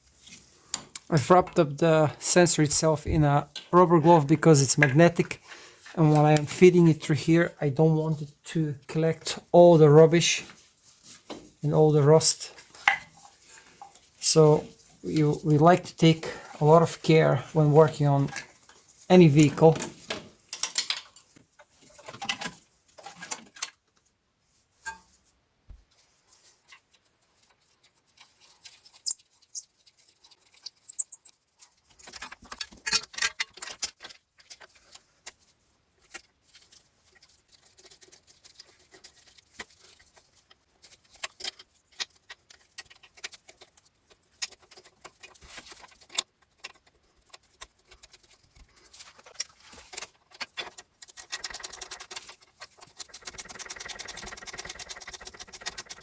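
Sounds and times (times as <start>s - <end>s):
clicks and light metallic knocks: 17.8s - 24.2s
fast evenly spaced clicking: 51.0s - 56.0s.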